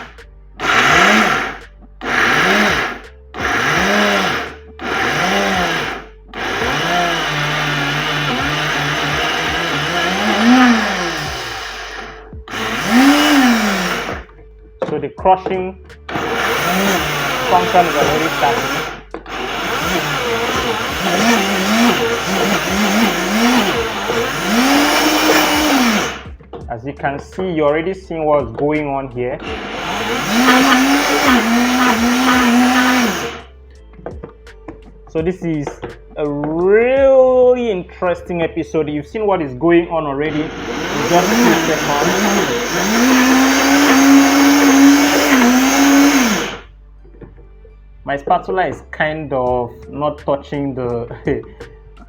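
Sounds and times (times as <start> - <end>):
blender crushing peanuts: 0.0 - 14.3, 16.1 - 26.4, 29.4 - 33.5, 40.3 - 46.7.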